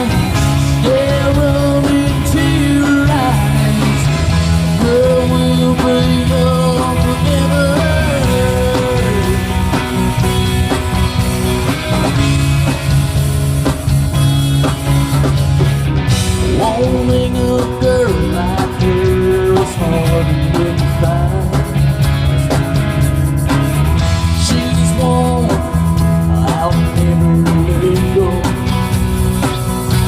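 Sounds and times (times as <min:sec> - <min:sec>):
person singing: 0:00.0 - 0:09.9, 0:16.4 - 0:22.0, 0:24.2 - 0:28.7
live rock band: 0:00.0 - 0:30.0.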